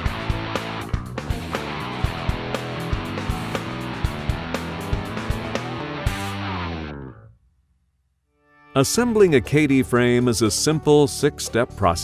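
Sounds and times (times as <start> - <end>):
guitar chord ringing: 0.0 - 7.3.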